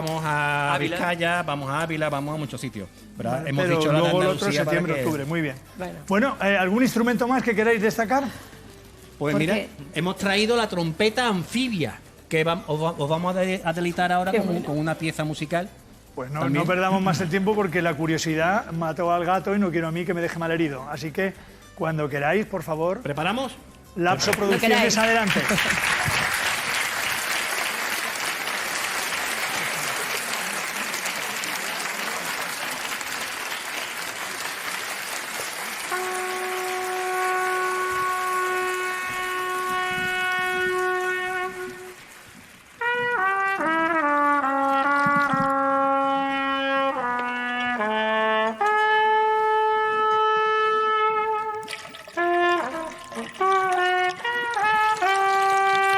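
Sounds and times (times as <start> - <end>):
brass instrument slow melody: 2.9 - 5.8, 34.0 - 55.9
audience applauding: 24.2 - 43.4, 51.4 - 55.9.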